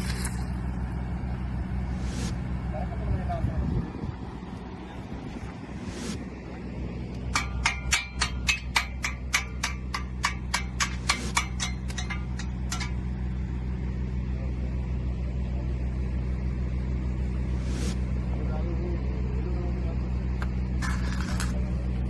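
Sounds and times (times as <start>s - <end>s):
low machine hum: 0.0s - 22.0s
hammer striking steel: 7.3s - 13.3s.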